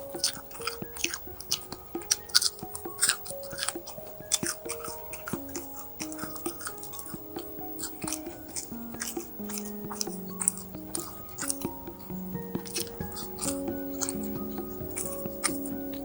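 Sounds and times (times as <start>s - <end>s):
crunchy chewing: 0.0s - 16.0s
slow background music: 0.0s - 16.0s.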